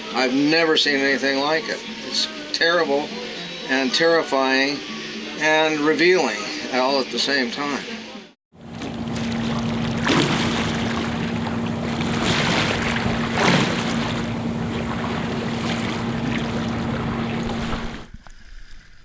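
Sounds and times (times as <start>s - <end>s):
steady low hum: 8.6s - 18.1s
water splashing along boat hull: 8.6s - 18.1s
wave splashes: 8.6s - 18.1s.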